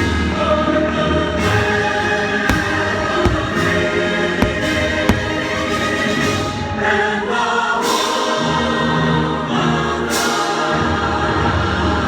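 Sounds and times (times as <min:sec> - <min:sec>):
firework bangs: 0:02.5 - 0:06.0.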